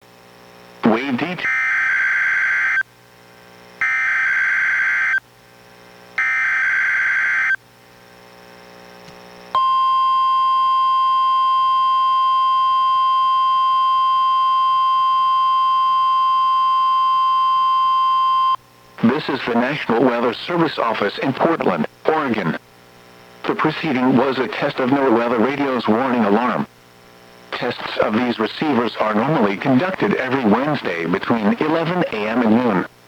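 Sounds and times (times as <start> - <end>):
steady warning alarm tone: 1.4 - 2.8, 3.8 - 5.2, 6.2 - 7.6.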